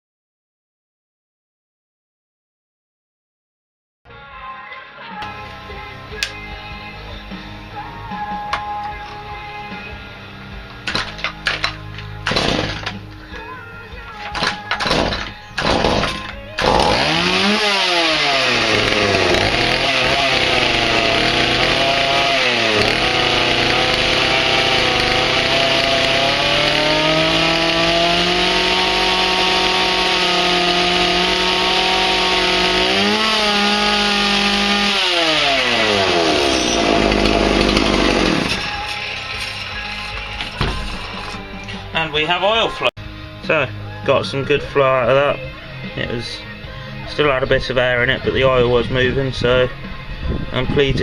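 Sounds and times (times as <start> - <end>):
chainsaw engine revving: 12.2 - 13.0, 14.4 - 39.9.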